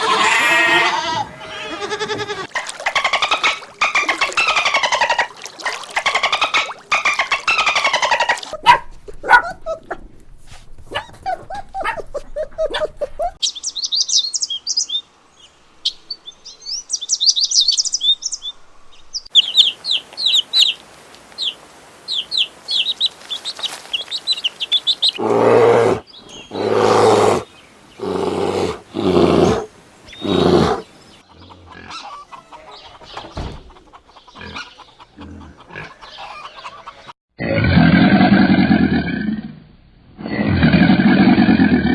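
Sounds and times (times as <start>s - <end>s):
birds chirping: 11.0s - 32.1s
loud animal calls: 25.2s - 31.1s.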